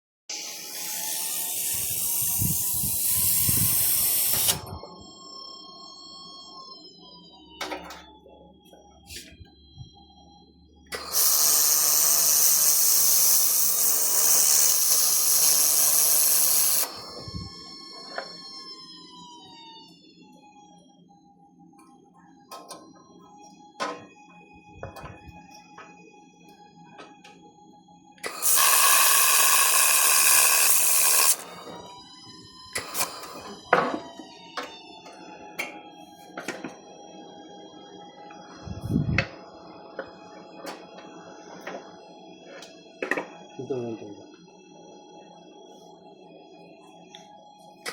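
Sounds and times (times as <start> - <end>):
laser welder hissing: 0.4 - 4.6, 11.0 - 17.2, 28.2 - 31.6, 32.8 - 33.5.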